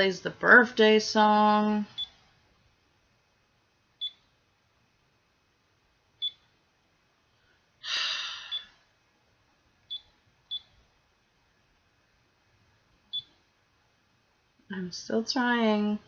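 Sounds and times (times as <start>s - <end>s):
breathy rush of noise: 7.4s - 8.7s
alarm clock key-press beeps: 9.9s - 10.7s.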